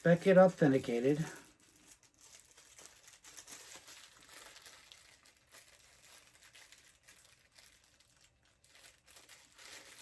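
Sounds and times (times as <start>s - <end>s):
packaging crinkling and rustling: 0.0s - 10.0s.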